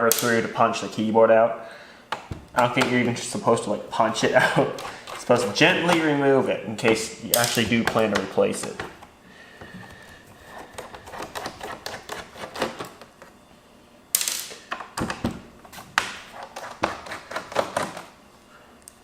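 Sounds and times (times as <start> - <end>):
plastic laptop parts clicking and scraping: 10.5 - 13.0.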